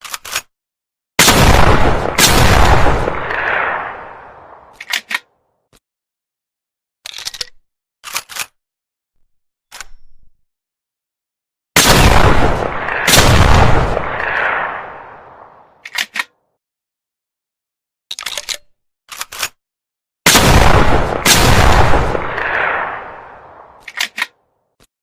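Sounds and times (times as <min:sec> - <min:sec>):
shotgun shots: 0:01.2 - 0:04.8, 0:11.8 - 0:15.7, 0:20.3 - 0:23.8.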